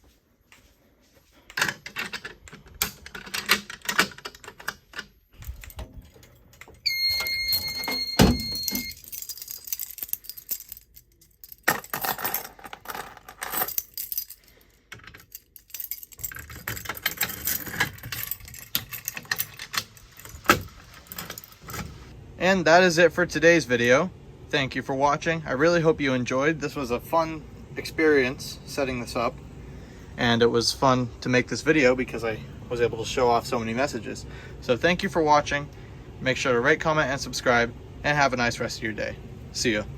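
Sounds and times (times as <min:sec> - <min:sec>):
objects clinking and rattling: 0:01.5 - 0:22.0
high electronic beep: 0:06.9 - 0:09.0.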